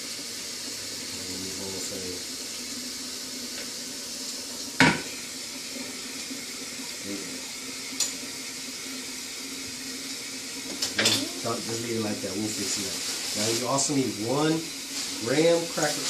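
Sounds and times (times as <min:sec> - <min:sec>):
steady hiss: 0:00.0 - 0:16.0
dishes and utensils handled: 0:10.7 - 0:11.8.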